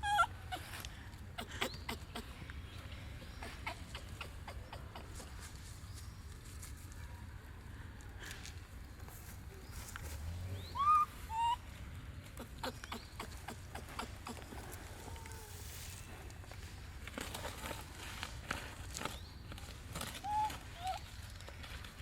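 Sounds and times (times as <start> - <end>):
baby monkey crying: 0.0 - 0.8, 1.4 - 2.4, 10.7 - 11.6, 12.4 - 15.5, 20.2 - 21.0.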